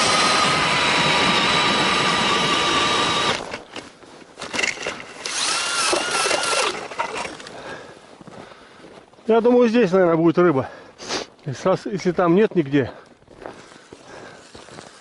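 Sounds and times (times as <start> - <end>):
drill motor whining: 0.0 - 3.6, 4.6 - 7.5
auger blades grinding ice: 0.0 - 3.8, 4.4 - 7.5, 13.8 - 15.0.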